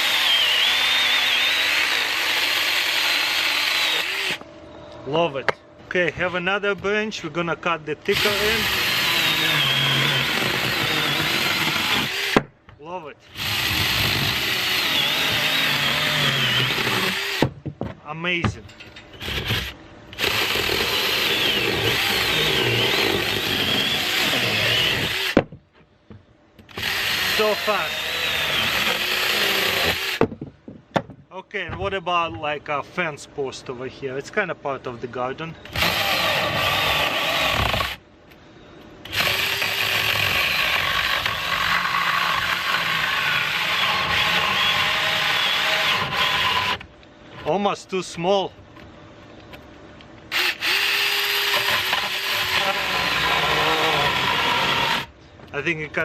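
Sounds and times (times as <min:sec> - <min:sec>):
electric chainsaw cutting wood: 0:00.0 - 0:04.4, 0:08.1 - 0:12.4, 0:13.3 - 0:17.5, 0:19.2 - 0:25.4, 0:26.7 - 0:30.2, 0:35.7 - 0:38.0, 0:39.1 - 0:46.8, 0:50.3 - 0:55.1.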